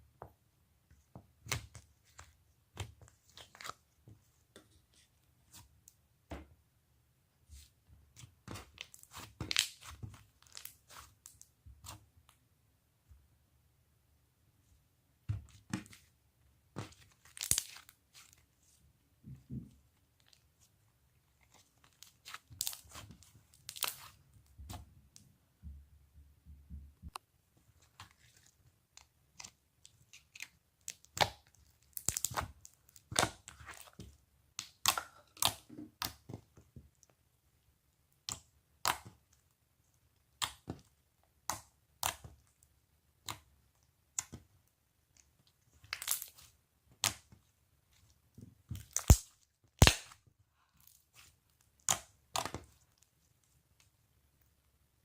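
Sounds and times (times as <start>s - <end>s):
slime squished by hand: 21.4s - 24.8s, 29.3s - 36.6s.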